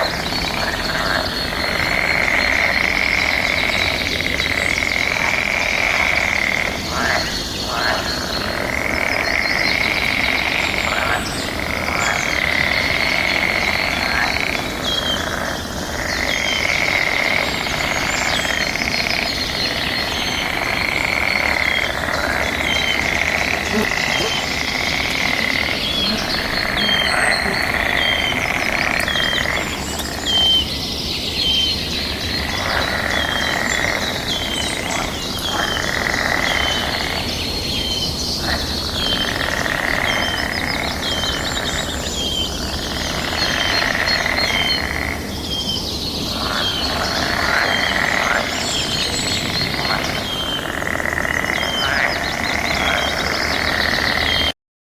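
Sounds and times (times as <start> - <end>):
chorus of frogs calling: 0.0 - 54.6
bird chirps: 14.0 - 44.8.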